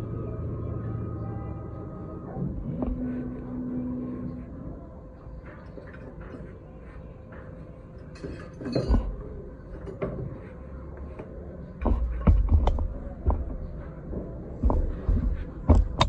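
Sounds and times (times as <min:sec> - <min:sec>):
low workshop hum: 0:00.0 - 0:16.0
objects knocking and clattering: 0:08.1 - 0:10.4, 0:11.8 - 0:16.0.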